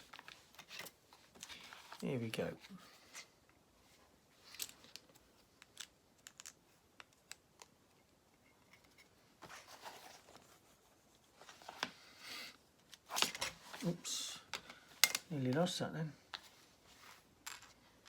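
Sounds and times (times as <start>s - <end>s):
soft rustling of handling: 0.0s - 18.0s
plastic pieces clicking: 4.5s - 7.7s.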